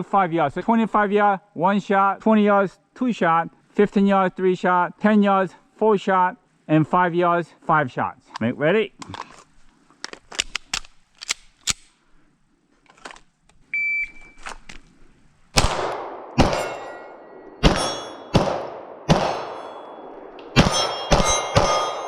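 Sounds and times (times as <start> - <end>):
gun handling clicks: 8.3 - 12.0, 12.8 - 13.6
pistol shots: 15.6 - 22.0
steel plates ringing: 16.4 - 18.5, 19.1 - 22.0.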